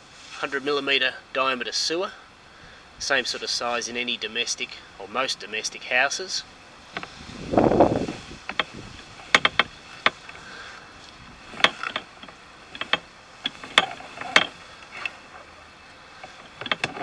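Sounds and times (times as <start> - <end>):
sharp clicks and knocks: 8.4 - 10.4, 11.5 - 15.3, 16.2 - 17.0.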